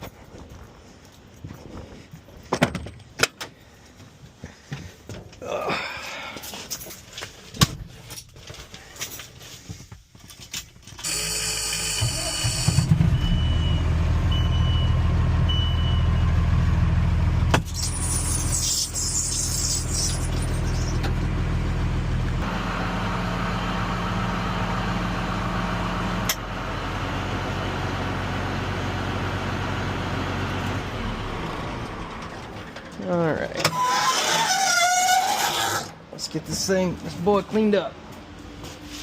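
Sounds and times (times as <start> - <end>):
truck engine running: 11.1 - 33.4.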